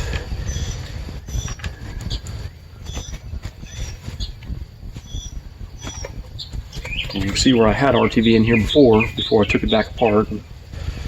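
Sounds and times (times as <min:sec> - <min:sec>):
plastic parts clicking and creaking: 0:00.0 - 0:03.6
bird chirps: 0:00.0 - 0:10.6.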